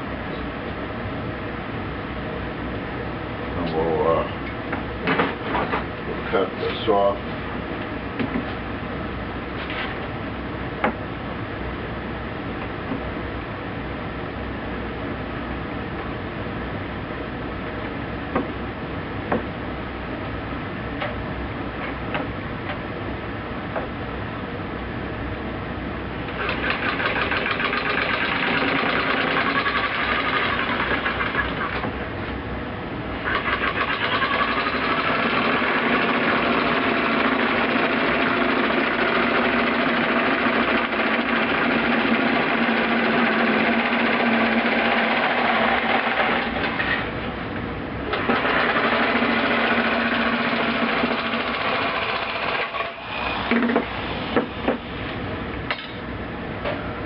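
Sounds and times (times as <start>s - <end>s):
electric sheet-metal cutter chattering: 26.3s - 31.8s, 33.2s - 46.9s, 48.2s - 53.6s.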